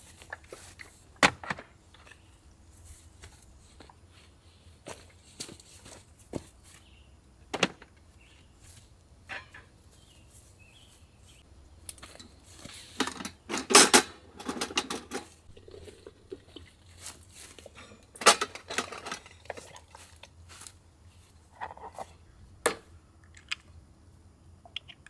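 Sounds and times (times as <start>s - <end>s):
camp cookware clicking and knocking: 1.2s - 1.8s, 7.5s - 8.0s, 9.3s - 9.8s, 11.8s - 16.5s, 17.6s - 19.9s, 22.6s - 22.9s
cookware clattering: 9.3s - 9.7s, 13.0s - 15.9s, 17.7s - 19.6s.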